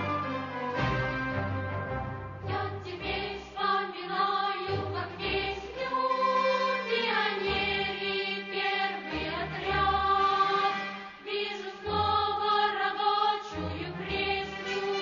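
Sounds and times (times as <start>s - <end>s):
instrumental accompaniment: 0.0s - 3.3s, 4.7s - 11.7s
choir singing: 0.0s - 15.0s.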